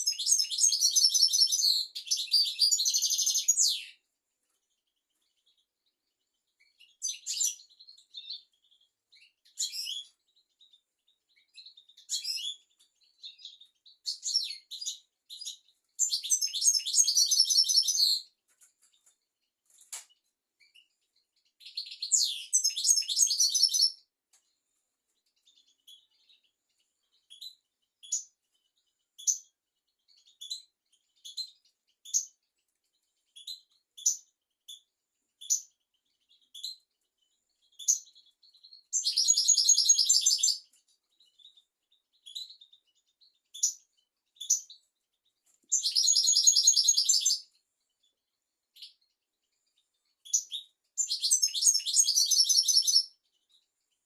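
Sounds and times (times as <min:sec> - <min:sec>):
goldfinch singing: 0:00.0 - 0:04.0, 0:06.6 - 0:18.4, 0:20.6 - 0:24.0, 0:37.6 - 0:48.1, 0:49.7 - 0:53.6.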